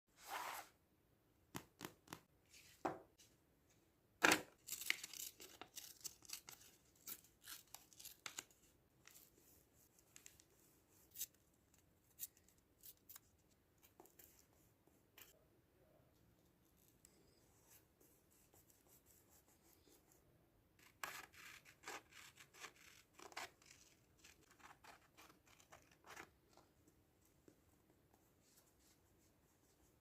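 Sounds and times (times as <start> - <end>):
scissors snipping paper: 4.7 - 9.3.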